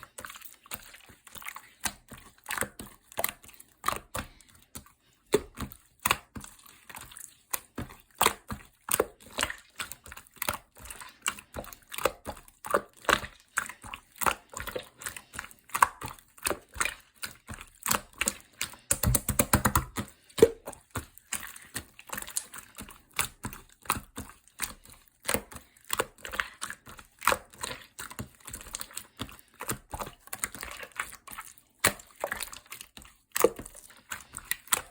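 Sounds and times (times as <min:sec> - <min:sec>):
hands squishing slime: 0:00.0 - 0:34.9
slime squelch: 0:00.0 - 0:34.9.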